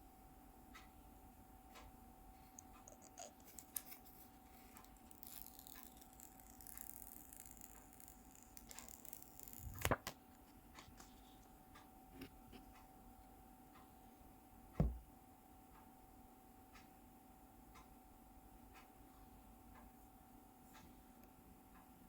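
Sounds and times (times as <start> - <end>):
faint steady hum: 0.0 - 22.0
sharp knock: 14.8 - 15.0.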